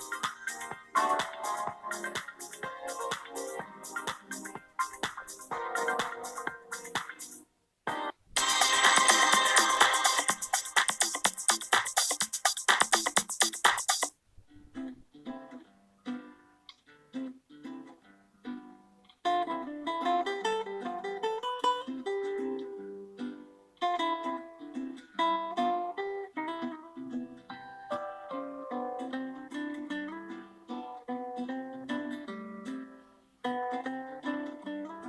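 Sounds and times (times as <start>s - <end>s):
plucked guitar ringtone: 8.4s - 10.4s, 27.6s - 32.8s.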